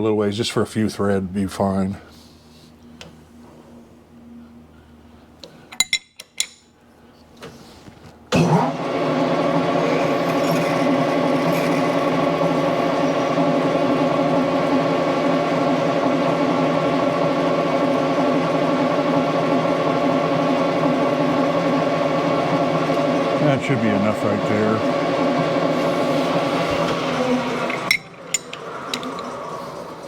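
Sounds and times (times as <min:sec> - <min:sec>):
machine tool motor running: 0:08.4 - 0:30.0
drill bit boring into steel: 0:09.6 - 0:16.5.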